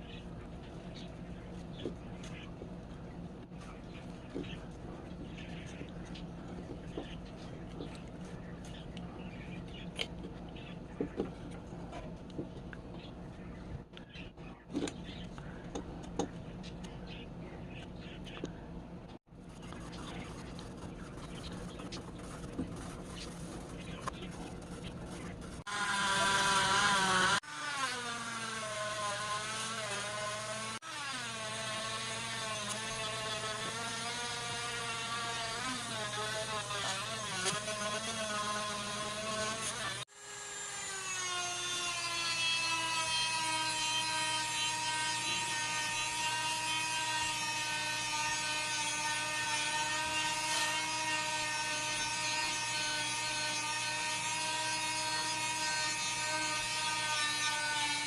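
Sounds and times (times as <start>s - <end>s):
electric power tool motor running: 25.6s - 58.0s.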